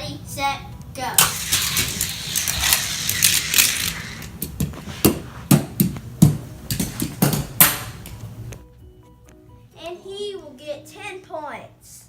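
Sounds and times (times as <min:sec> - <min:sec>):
toy car clacking down wooden steps: 0:01.2 - 0:04.3
toy car whirring along plastic track: 0:01.2 - 0:04.3.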